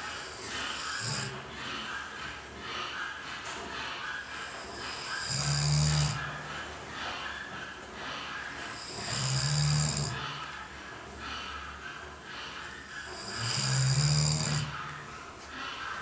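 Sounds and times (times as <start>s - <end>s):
man snoring heavily: 0.0s - 1.4s, 4.9s - 6.3s, 8.8s - 10.3s, 13.1s - 14.8s
soft breaths: 0.0s - 16.0s.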